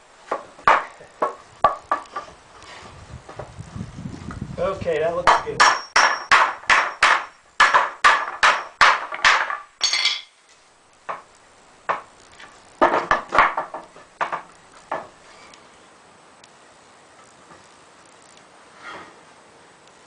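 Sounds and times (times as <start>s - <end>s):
hammer striking wooden boards: 0.3s - 2.3s, 5.2s - 10.0s, 11.9s - 12.1s, 12.8s - 15.1s.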